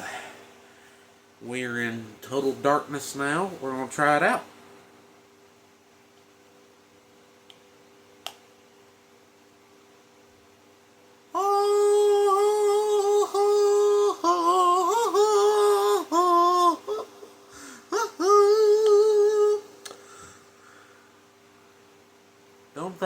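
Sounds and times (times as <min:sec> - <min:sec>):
person humming in high voice: 0:11.3 - 0:20.0.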